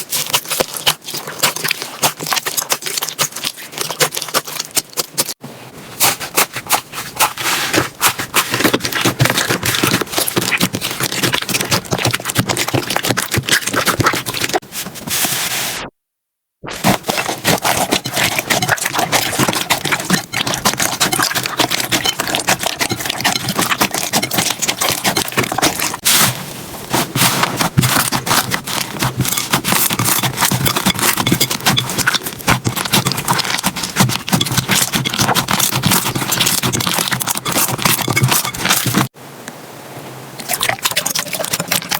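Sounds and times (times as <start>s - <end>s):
slime crackling and popping: 26.9s - 38.7s.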